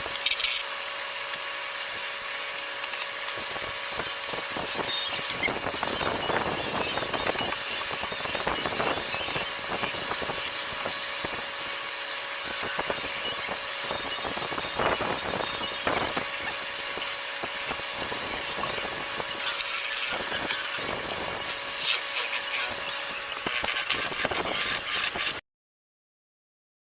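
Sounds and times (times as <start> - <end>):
power tool motor whine: 0.0 - 25.4
rapid tool strokes on wood: 0.0 - 25.4.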